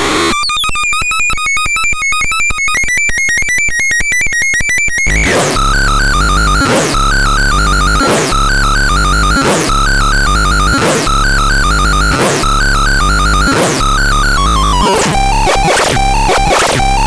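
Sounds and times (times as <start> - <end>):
heavy low bass line: 5.1 - 17.0
synthesizer music: 5.1 - 17.0.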